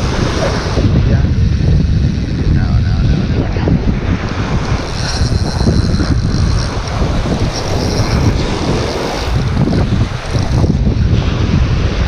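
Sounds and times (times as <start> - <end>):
strong wind buffeting microphone: 0.0 - 12.0.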